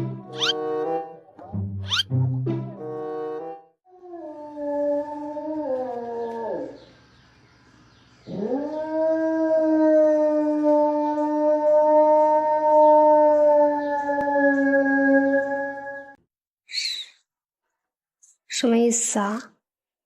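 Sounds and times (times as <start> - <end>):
dog howling: 0.4 - 0.6, 4.0 - 6.8, 8.3 - 16.2.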